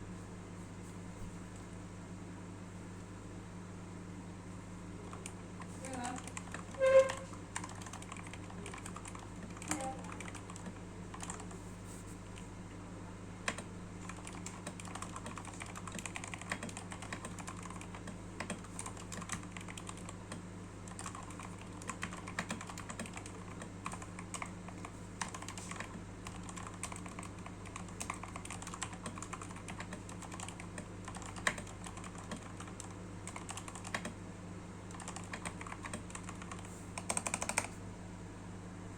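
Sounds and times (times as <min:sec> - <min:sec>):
steady low hum: 0:00.0 - 0:38.9
muted mechanical keyboard typing: 0:05.0 - 0:11.6, 0:13.4 - 0:34.2, 0:34.9 - 0:37.8.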